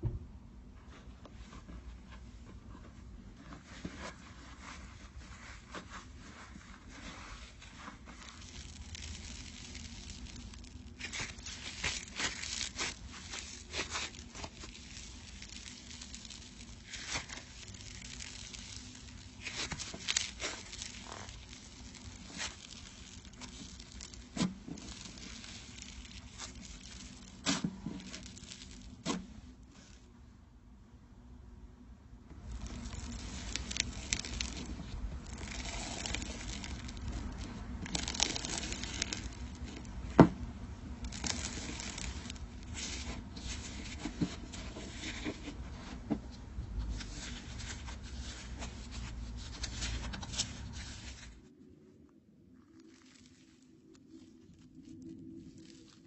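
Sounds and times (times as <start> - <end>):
crunchy slime crackling: 6.9 - 30.0, 32.4 - 45.8, 46.9 - 51.4, 52.6 - 56.0.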